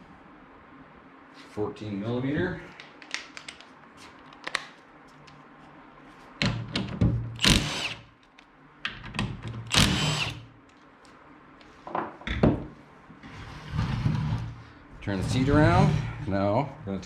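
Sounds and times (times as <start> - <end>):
power driver whining: 7.4 - 8.0, 9.7 - 10.4.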